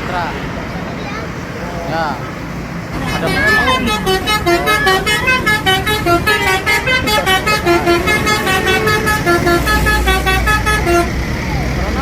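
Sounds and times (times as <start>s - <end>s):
low rumble of bus: 0.0s - 12.0s
musical bus horn tune: 2.9s - 11.8s.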